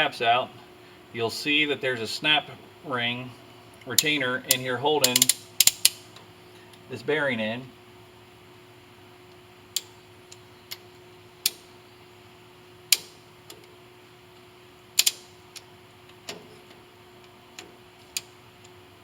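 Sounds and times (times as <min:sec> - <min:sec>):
metal clicks of pliers: 0:04.0 - 0:06.0.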